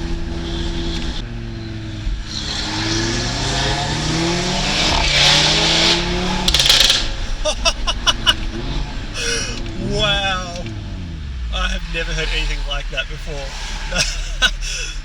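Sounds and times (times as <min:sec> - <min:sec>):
car engine accelerating: 0:00.0 - 0:15.0
exhaust cracks and pops: 0:02.0 - 0:13.2.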